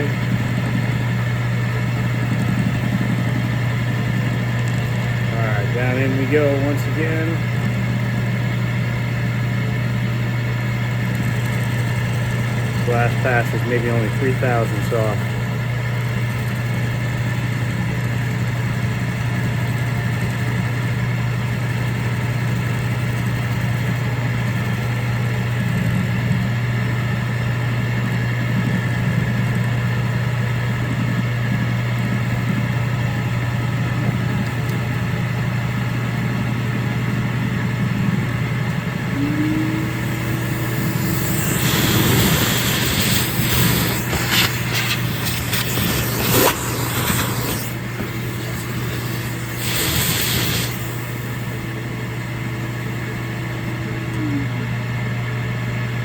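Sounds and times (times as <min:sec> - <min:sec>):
drill press motor hum: 0:00.0 - 0:56.0
high cutting hiss: 0:39.7 - 0:51.2.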